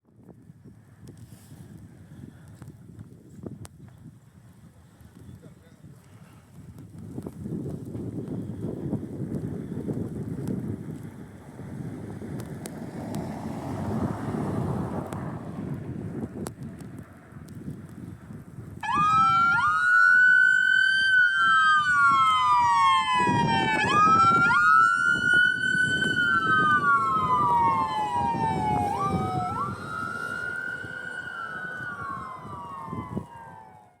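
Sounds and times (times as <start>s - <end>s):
vehicle and wind rumble: 0.0s - 34.0s
emergency siren wailing: 18.8s - 34.0s.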